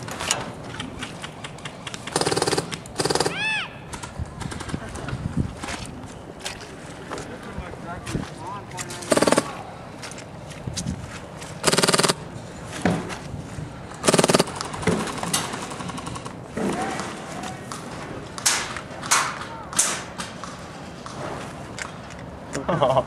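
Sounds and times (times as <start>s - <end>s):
airsoft gun full-auto bursts: 2.1s - 3.5s, 9.1s - 9.5s, 11.6s - 12.2s, 14.0s - 16.4s.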